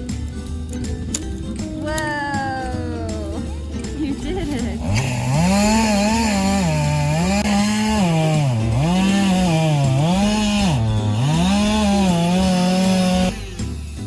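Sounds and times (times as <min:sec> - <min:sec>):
chainsaw revving: 0:03.3 - 0:14.0.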